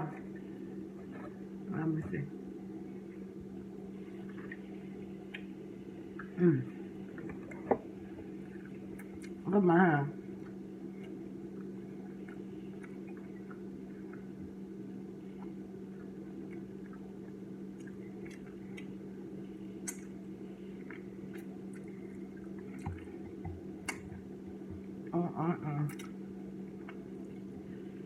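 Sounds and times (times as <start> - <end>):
steady low hum: 0.0 - 28.0
wet chewing and mouth clicks: 7.1 - 9.4, 10.3 - 14.6, 15.3 - 19.2, 19.8 - 25.1, 25.9 - 27.7.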